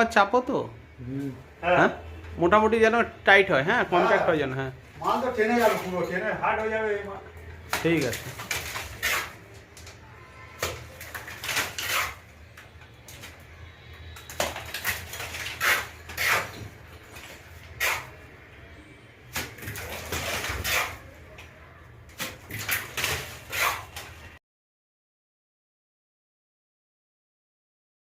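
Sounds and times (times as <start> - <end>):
hand tools scraping cement: 8.0 - 9.4, 11.4 - 12.2, 14.8 - 18.2, 20.0 - 21.1, 23.0 - 24.1.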